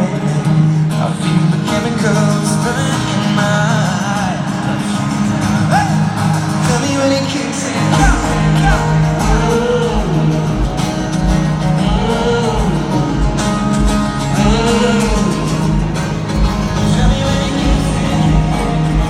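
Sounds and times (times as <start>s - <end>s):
guitar: 0.0s - 19.0s
man singing: 0.0s - 19.0s
deep bass: 8.0s - 19.0s.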